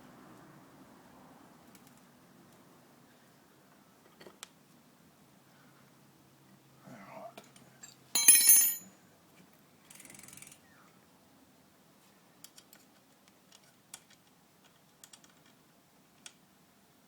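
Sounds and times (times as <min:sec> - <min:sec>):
small parts and tools clicking: 0:13.5 - 0:15.6.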